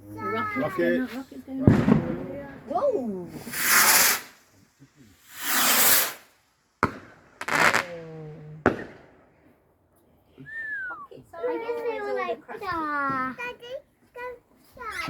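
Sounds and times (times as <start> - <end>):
firework rockets hissing: 1.0 - 8.0
firework sharp burst: 1.6 - 8.0.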